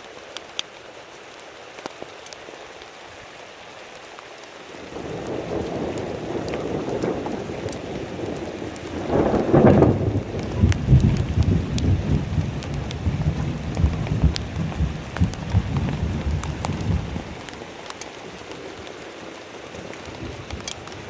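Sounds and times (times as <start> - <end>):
heavy rain: 0.0 - 21.0
raindrops ticking: 0.0 - 21.0
rolling thunder: 5.0 - 17.5.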